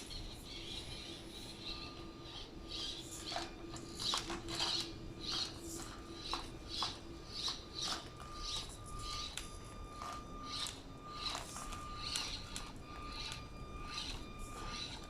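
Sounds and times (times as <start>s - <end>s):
small electric motor whine: 0.0s - 15.0s.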